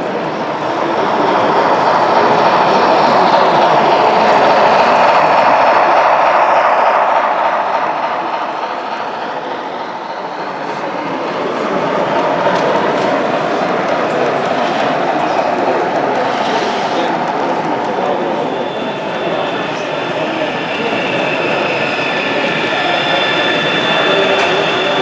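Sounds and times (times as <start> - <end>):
model train clattering on track: 12.1 - 18.0.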